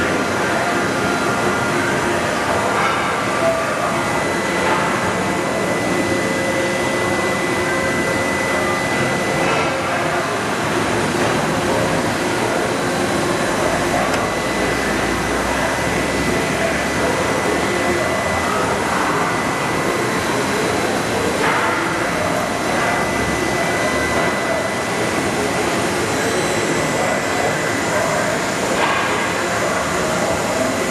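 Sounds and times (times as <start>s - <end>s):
machinery running: 0.0s - 30.9s
thin high whine: 0.0s - 30.9s.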